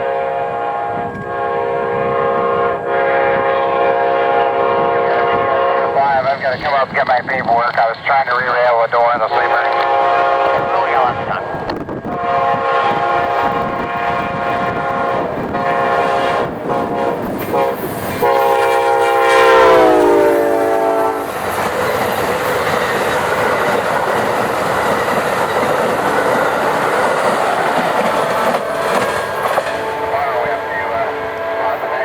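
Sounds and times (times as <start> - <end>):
locomotive air horn blasts: 0.0 - 6.0, 9.4 - 21.3, 28.6 - 32.0
train wheels clacking on rails: 11.4 - 32.0.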